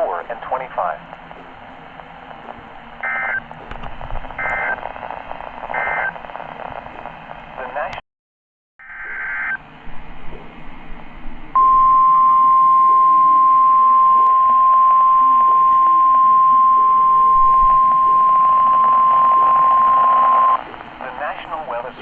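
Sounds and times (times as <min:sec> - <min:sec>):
faint radio hiss: 0:00.0 - 0:08.0, 0:15.2 - 0:22.0
long steady alarm beep: 0:03.0 - 0:03.4, 0:11.6 - 0:20.6.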